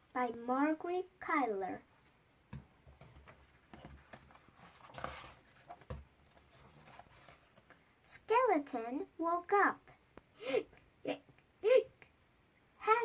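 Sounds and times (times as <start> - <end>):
light knocks and taps on book: 2.5 - 6.1
page turning rustle: 3.2 - 7.8.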